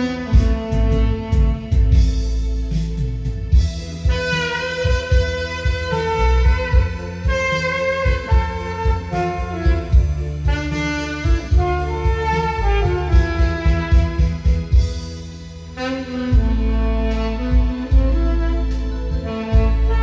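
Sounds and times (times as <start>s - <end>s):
keyboard bass and drums backing: 0.0s - 20.0s
saxophone melody: 0.0s - 20.0s.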